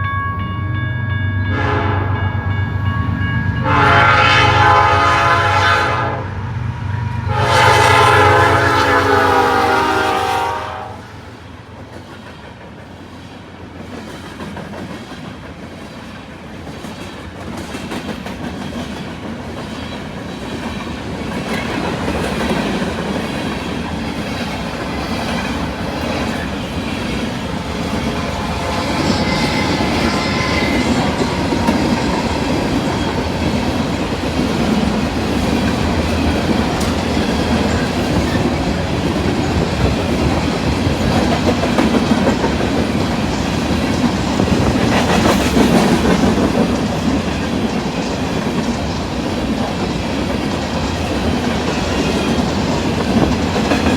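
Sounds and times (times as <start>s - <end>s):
freight train rumbling past: 0.0s - 53.9s.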